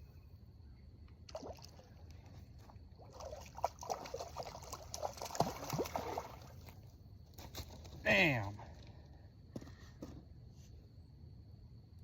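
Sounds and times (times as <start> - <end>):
water splashing and trickling: 1.2 - 8.8.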